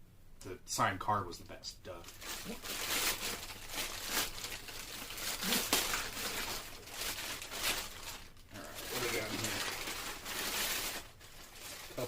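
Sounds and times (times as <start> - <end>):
plastic bag crinkling and tearing: 2.0 - 12.0.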